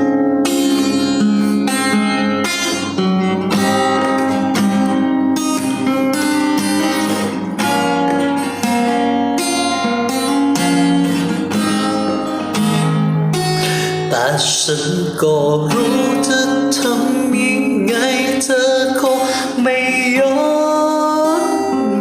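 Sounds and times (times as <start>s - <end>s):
acoustic guitar strumming chords: 0.0s - 22.0s.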